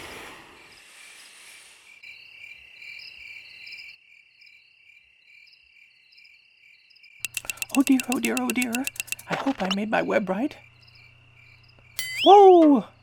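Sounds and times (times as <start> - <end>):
crickets chirping: 7.3 - 13.0.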